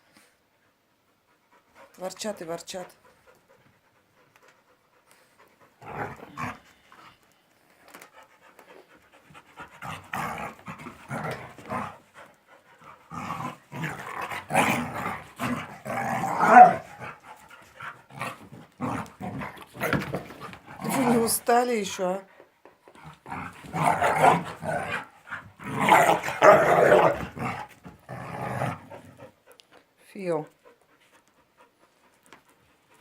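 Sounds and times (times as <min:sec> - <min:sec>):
dogs panting: 0:00.2 - 0:28.1, 0:28.7 - 0:33.0
dogs growling: 0:05.5 - 0:07.2, 0:09.2 - 0:21.6, 0:22.9 - 0:29.4.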